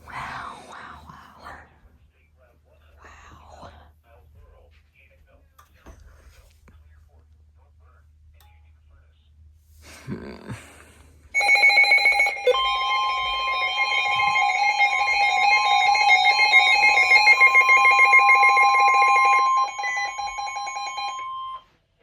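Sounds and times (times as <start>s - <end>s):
pulsing many-toned alarm beep: 11.4s - 21.7s
steady single-pitch alarm tone: 11.4s - 21.7s.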